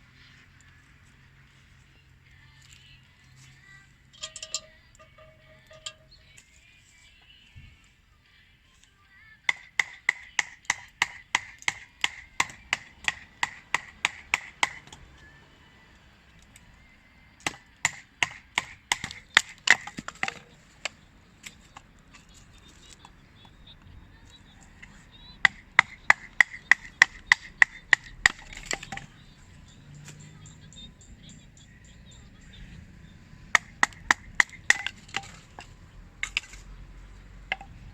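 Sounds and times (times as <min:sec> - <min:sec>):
metallic striking with ring: 0:04.2 - 0:06.4.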